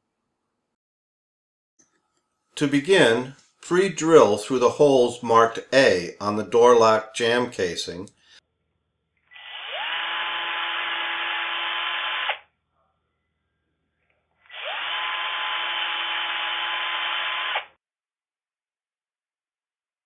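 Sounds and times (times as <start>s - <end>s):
electric drill whining: 9.3s - 12.5s, 14.4s - 17.8s.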